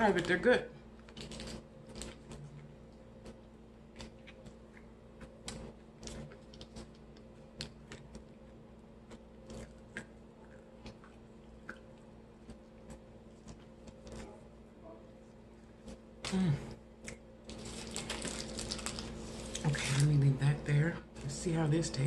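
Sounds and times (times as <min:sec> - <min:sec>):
low steady hum: 0:00.0 - 0:22.0
packaging clicks and crinkles: 0:17.5 - 0:20.0.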